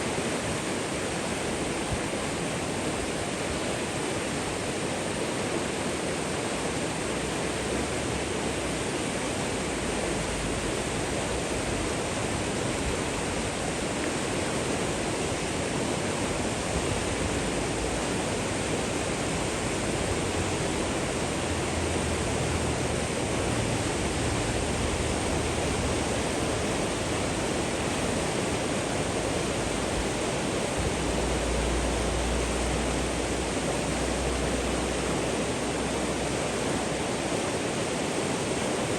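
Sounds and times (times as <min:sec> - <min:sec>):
flowing water rushing: 0:00.0 - 0:38.9.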